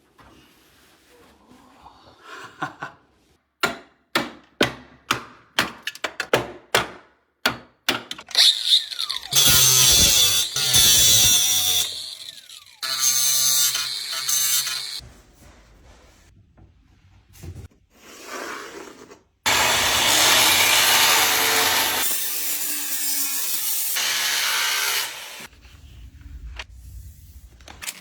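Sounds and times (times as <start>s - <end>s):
power tool running: 8.3s - 15.0s, 19.5s - 25.5s.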